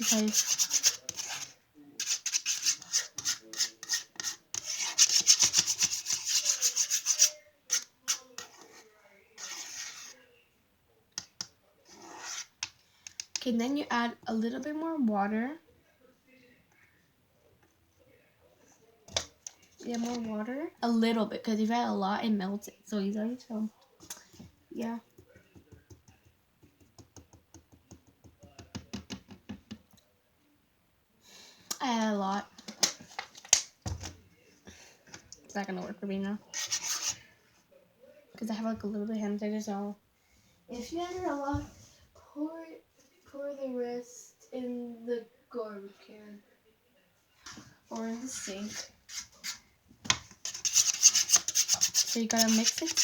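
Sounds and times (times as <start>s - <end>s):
pencil scraping slime in container: 0.0s - 8.8s, 9.4s - 10.2s, 11.9s - 12.6s, 36.5s - 37.2s, 50.4s - 53.0s.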